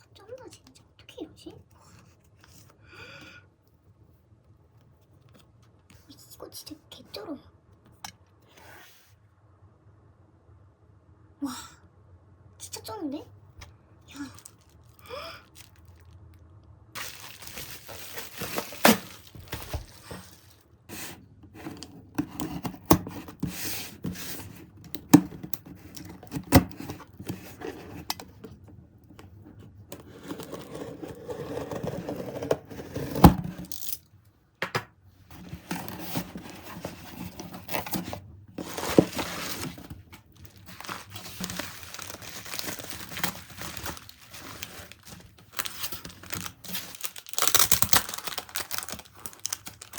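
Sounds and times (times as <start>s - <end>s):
packaging crinkling: 14.2s - 16.2s, 17.0s - 28.5s, 35.3s - 49.9s.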